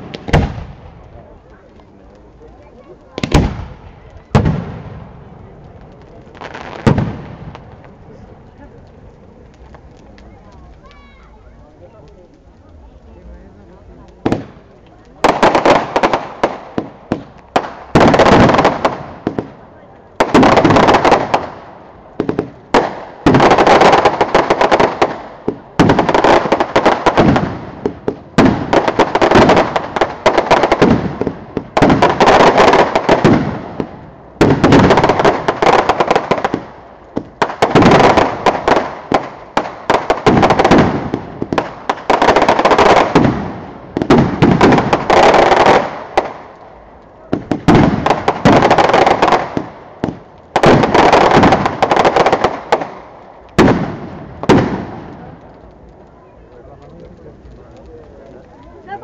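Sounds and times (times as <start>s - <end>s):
fireworks banging and crackling: 0.0s - 59.0s.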